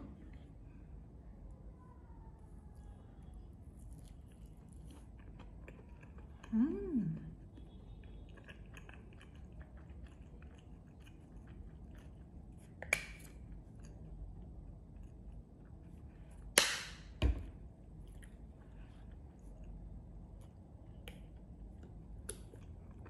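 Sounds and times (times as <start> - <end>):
person chewing food: 3.7 - 16.6, 17.8 - 23.0.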